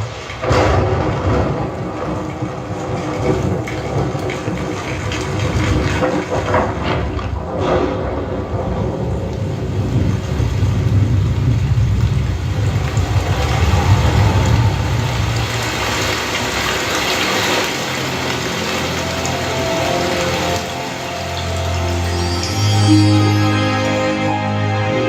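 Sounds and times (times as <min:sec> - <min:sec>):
rushing noise: 0:12.4 - 0:25.0.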